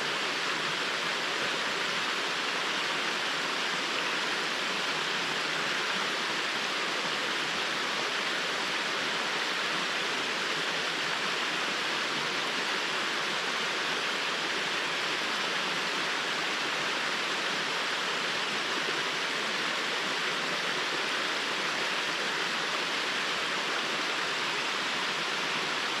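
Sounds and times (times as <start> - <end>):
small waterfall splashing: 0.0 - 26.0.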